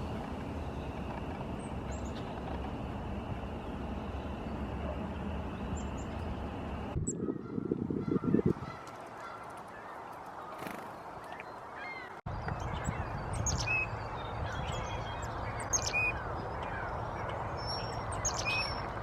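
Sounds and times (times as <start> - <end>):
low outdoor rumble: 0.0 - 7.8.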